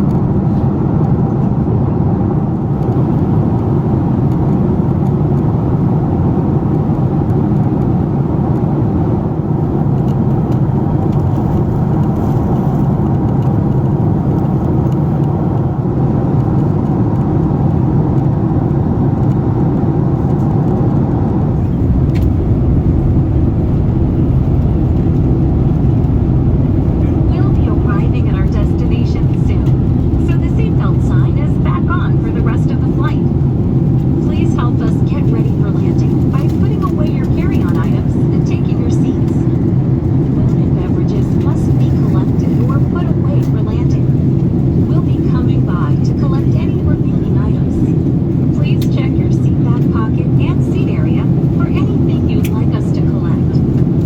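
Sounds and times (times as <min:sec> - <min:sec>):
aircraft engines droning: 0:00.0 - 0:54.0
air rushing past fuselage: 0:18.3 - 0:36.7.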